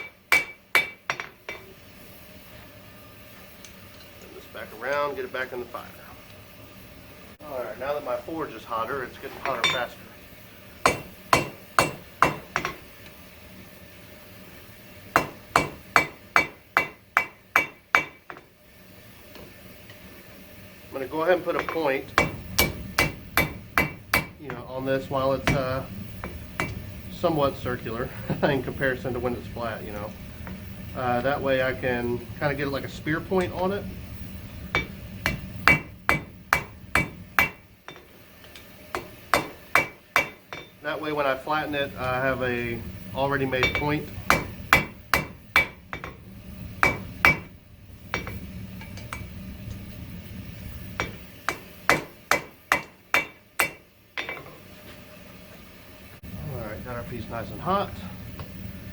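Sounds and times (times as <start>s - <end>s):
hammer blows on metal anvil: 0.0s - 1.7s, 10.8s - 12.8s, 15.2s - 18.4s, 21.6s - 26.9s, 34.7s - 38.1s, 38.9s - 40.8s, 43.2s - 46.2s, 46.8s - 49.3s, 51.0s - 54.5s.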